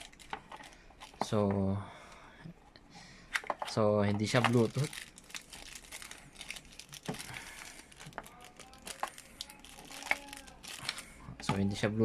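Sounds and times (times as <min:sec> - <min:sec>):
plastic packaging crinkling: 0:00.0 - 0:01.3, 0:03.4 - 0:11.2.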